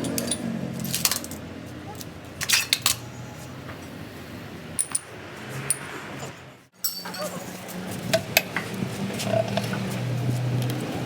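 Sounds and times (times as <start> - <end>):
metal parts and tools clinking: 0.0 - 3.5, 4.8 - 5.9, 6.8 - 7.4.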